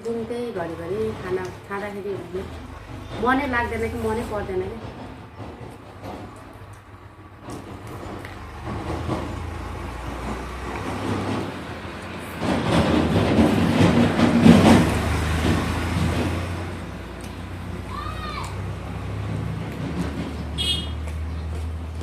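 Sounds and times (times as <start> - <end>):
vehicle passing by: 7.3 - 22.0.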